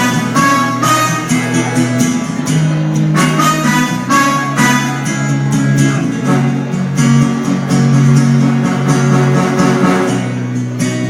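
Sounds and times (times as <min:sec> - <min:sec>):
steady low notes: 0:00.0 - 0:11.0
strummed acoustic guitar: 0:00.0 - 0:11.0.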